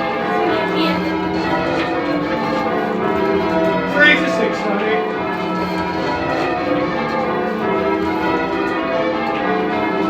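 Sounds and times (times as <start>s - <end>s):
church bells ringing: 0.0s - 10.0s.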